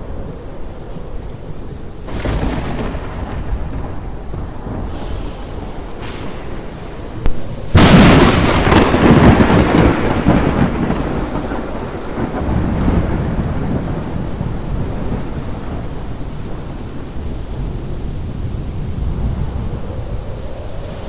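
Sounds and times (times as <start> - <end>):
heavy rain: 0.0 - 21.0
thunderclap with rolling rumble: 0.0 - 21.0.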